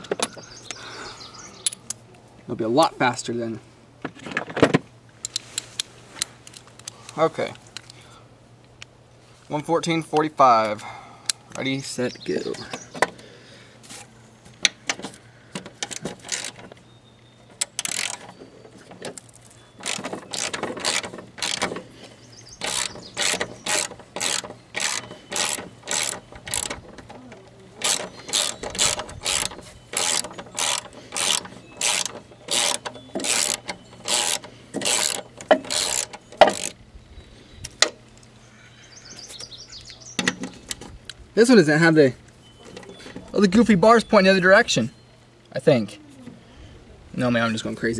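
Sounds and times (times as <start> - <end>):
socket ratchet clicking: 15.6 - 16.6, 17.6 - 18.3, 19.8 - 21.8, 22.6 - 27.1, 27.8 - 36.8.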